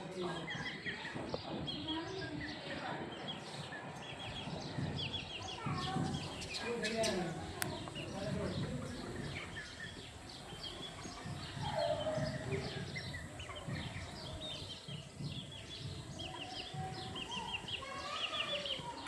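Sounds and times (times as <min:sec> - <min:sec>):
chickens chirping: 0:00.1 - 0:19.0.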